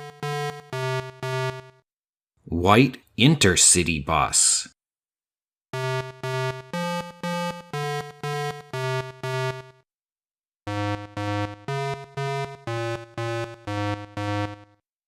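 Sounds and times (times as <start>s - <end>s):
simple tune of evenly spaced notes: 0.0s - 1.6s, 5.8s - 9.8s, 10.7s - 14.8s.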